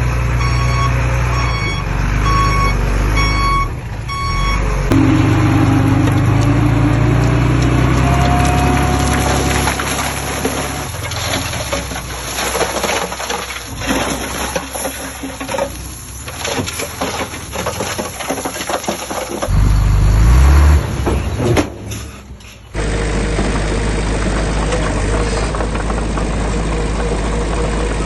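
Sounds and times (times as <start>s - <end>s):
diesel machinery engine: 0.0s - 28.0s
clattering: 4.9s - 19.5s.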